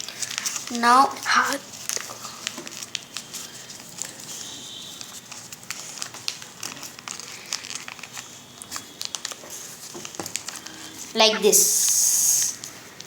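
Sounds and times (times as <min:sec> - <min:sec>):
paper crinkling and crackling: 0:00.0 - 0:13.0.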